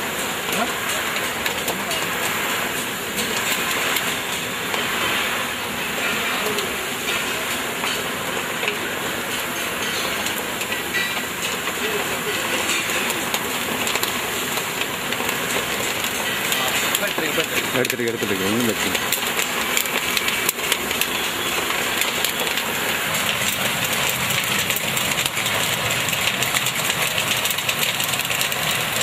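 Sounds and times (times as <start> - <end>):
grain tumbling in roasting machine: 0.0 - 29.0.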